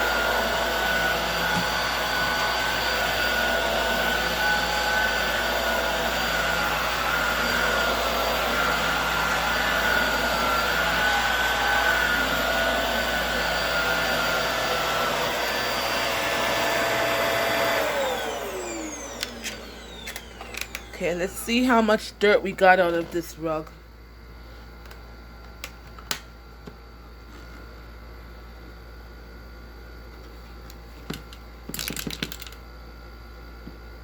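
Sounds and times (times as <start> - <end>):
vacuum motor spinning down: 0.0 - 21.8
vacuum cleaner running: 0.0 - 24.8.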